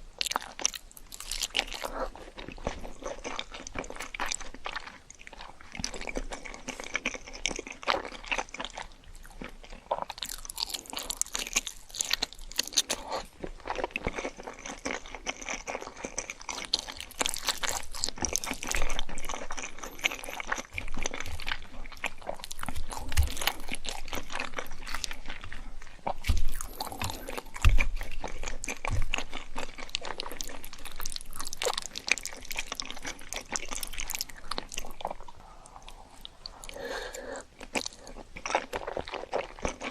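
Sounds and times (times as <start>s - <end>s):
crisp food crunching: 0.2s - 39.9s
dull low thuds: 26.2s - 28.2s.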